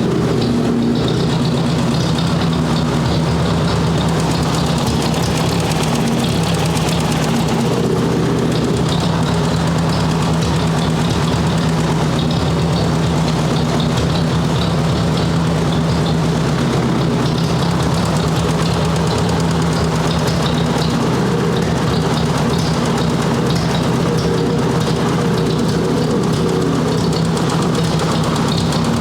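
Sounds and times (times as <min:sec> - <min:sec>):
tractor engine idling: 0:00.0 - 0:29.0.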